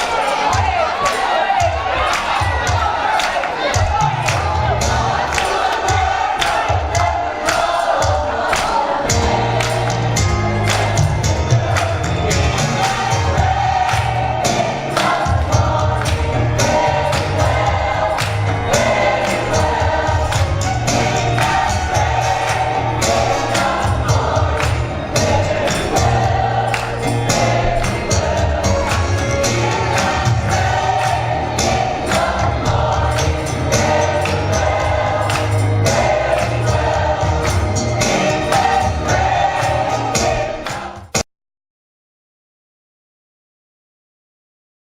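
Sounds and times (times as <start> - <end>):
choir singing: 0.0 - 41.2
tambourine: 7.5 - 41.1.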